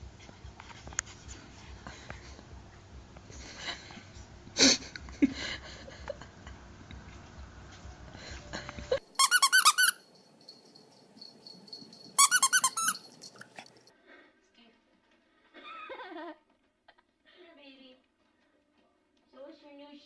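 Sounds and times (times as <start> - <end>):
squeaky toy squeaking: 9.0 - 10.1, 12.2 - 13.6.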